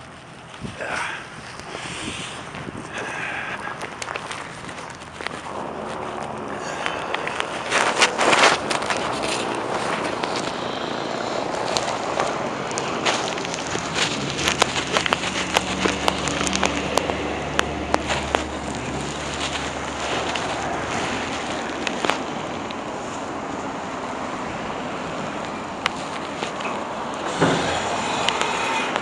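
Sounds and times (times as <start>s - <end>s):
street traffic noise: 0.0s - 29.0s
vehicle engine running low: 0.0s - 29.0s
wind: 0.0s - 29.0s
sharp crackling clicks: 2.4s - 22.8s.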